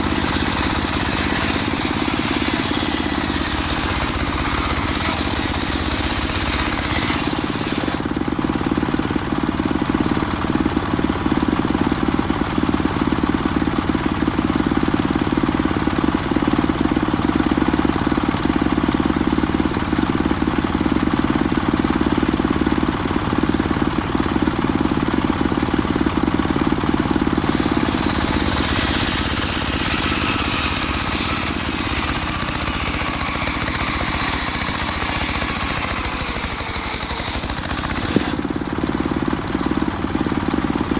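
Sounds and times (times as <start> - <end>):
sawmill blade ripping log: 0.0 - 8.2, 27.3 - 39.0.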